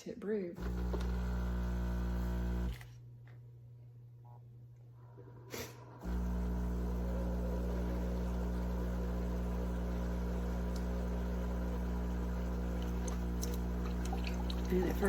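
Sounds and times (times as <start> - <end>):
coffee maker pump humming: 0.6 - 2.8, 5.8 - 15.0.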